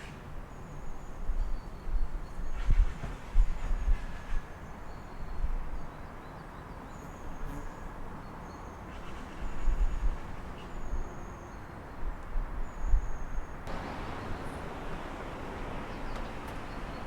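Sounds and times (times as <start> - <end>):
traffic rumble: 13.6 - 17.0
birds chirping: 13.7 - 17.0.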